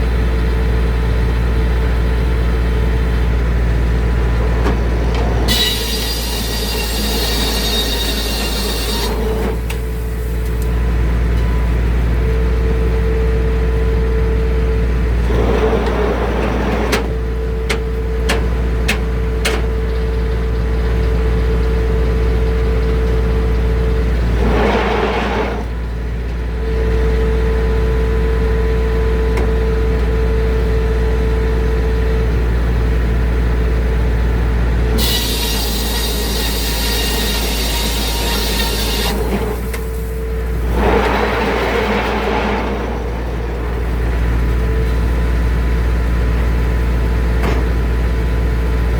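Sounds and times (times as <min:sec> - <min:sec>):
saw blade spinning hum and whine: 0:04.2 - 0:09.7, 0:35.0 - 0:40.0
short rushing noises: 0:24.3 - 0:25.8, 0:40.5 - 0:45.2.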